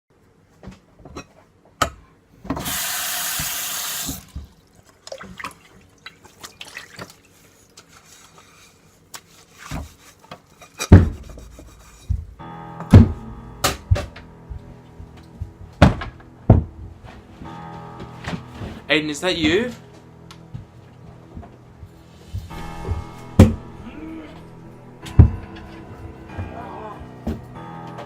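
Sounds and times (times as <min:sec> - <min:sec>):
loud thump: 0:22.4 - 0:25.8.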